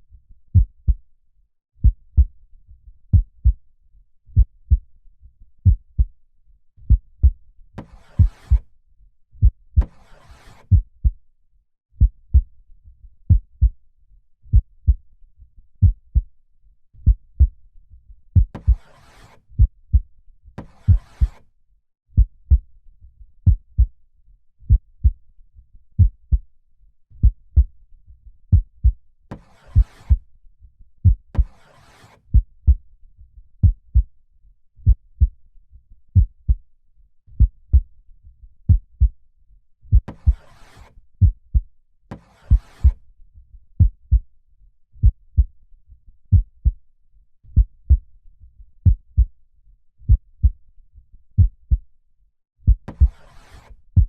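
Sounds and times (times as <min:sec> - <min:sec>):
slow heartbeat: 0:00.6 - 0:01.0, 0:01.8 - 0:02.3, 0:03.1 - 0:03.6, 0:04.4 - 0:04.9, 0:05.6 - 0:06.1, 0:06.9 - 0:07.4, 0:08.0 - 0:08.6, 0:10.7 - 0:11.2, 0:12.0 - 0:12.5, 0:13.3 - 0:13.8, 0:14.5 - 0:15.0, 0:15.8 - 0:16.3, 0:17.0 - 0:17.6, 0:18.4 - 0:18.8, 0:19.6 - 0:20.1, 0:22.2 - 0:22.7, 0:23.4 - 0:23.9, 0:24.7 - 0:25.2, 0:26.0 - 0:26.4, 0:27.2 - 0:27.7, 0:28.5 - 0:29.0, 0:29.7 - 0:30.2, 0:33.6 - 0:34.1, 0:34.8 - 0:35.4, 0:36.2 - 0:36.6, 0:37.4 - 0:37.9, 0:38.7 - 0:39.2, 0:39.9 - 0:40.5, 0:41.2 - 0:41.7, 0:42.5 - 0:43.0, 0:43.8 - 0:44.2, 0:45.0 - 0:45.5, 0:46.3 - 0:46.8, 0:47.5 - 0:48.0, 0:48.8 - 0:49.3, 0:50.1 - 0:50.6, 0:51.4 - 0:51.8, 0:52.6 - 0:53.2.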